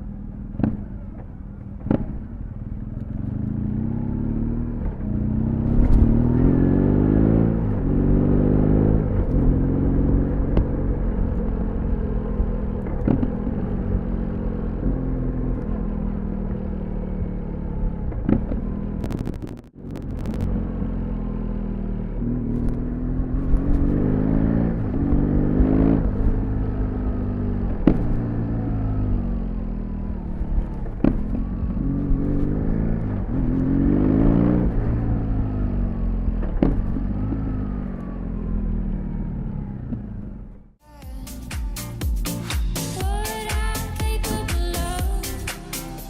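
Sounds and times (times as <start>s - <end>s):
motorcycle engine shifting gears: 0.0s - 40.8s
exhaust pops: 0.4s - 3.4s, 12.4s - 13.8s, 18.0s - 20.5s, 27.6s - 28.6s, 30.2s - 33.7s, 36.2s - 38.1s.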